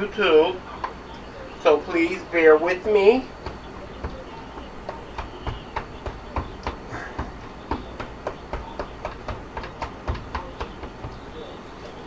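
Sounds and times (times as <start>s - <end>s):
knife chopping on cutting board: 2.8s - 11.4s.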